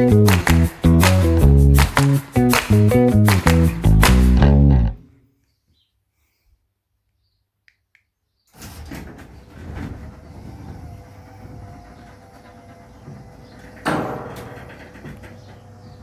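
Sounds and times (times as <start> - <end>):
garage door motor humming: 8.5 - 16.0
loud clunk: 8.6 - 16.0.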